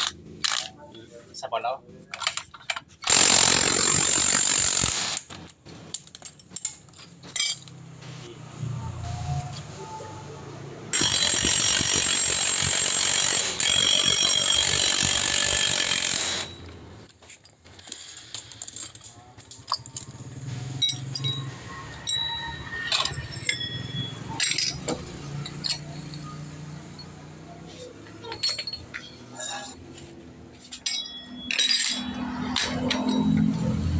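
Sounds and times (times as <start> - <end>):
metallic clicks of tools: 0.0 - 0.8, 17.8 - 27.2, 30.7 - 33.9.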